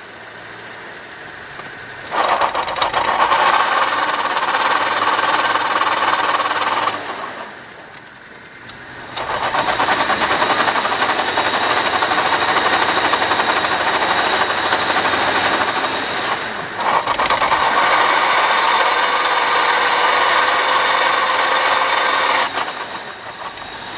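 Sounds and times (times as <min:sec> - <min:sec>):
car engine running with whine: 0:00.0 - 0:23.9.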